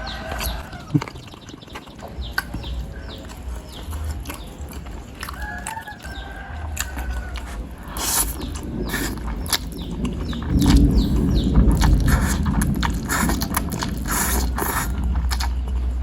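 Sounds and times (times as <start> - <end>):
bird chirps: 0.0 - 6.4, 7.1 - 12.5
mouth and handling noise: 0.0 - 16.0
person chewing: 0.0 - 16.0.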